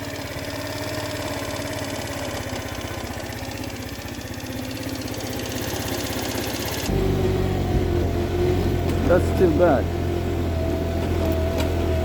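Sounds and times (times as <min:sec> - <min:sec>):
scooter engine idling unevenly: 0:00.0 - 0:12.0.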